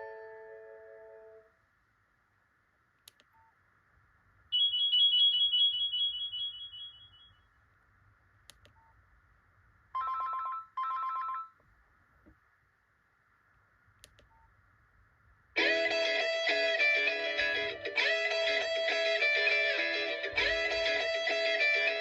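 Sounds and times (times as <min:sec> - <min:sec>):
trilling two-note ringtone: 0:17.4 - 0:17.9.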